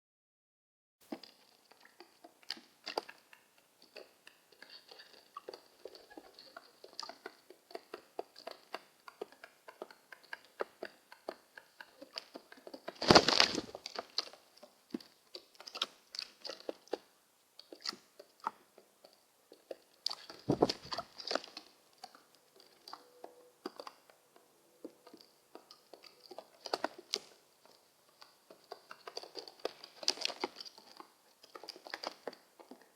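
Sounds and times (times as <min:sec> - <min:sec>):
pigeons pecking at seed: 0:01.1 - 0:32.9
thumps: 0:20.5 - 0:21.0.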